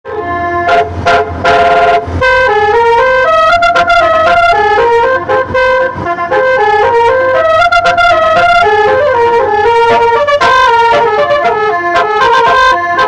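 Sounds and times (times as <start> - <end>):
multi-tone musical horn: 0.1 - 13.0.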